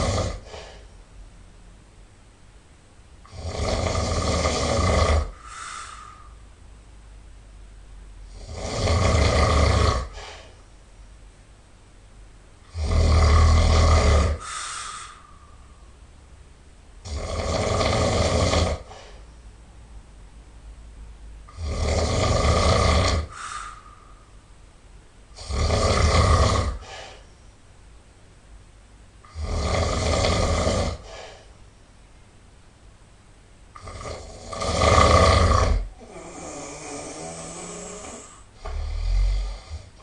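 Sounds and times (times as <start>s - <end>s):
person snoring loudly: 0.0s - 0.8s, 3.2s - 6.3s, 8.3s - 10.5s, 12.6s - 15.3s, 17.0s - 19.2s, 21.5s - 23.9s, 25.4s - 27.2s, 29.2s - 31.4s, 33.8s - 40.0s
quiet breathing: 0.0s - 1.1s, 3.2s - 6.6s, 8.2s - 10.8s, 13.6s - 16.1s, 18.1s - 19.6s, 22.6s - 24.6s, 26.3s - 27.7s, 29.2s - 31.8s, 33.8s - 40.0s.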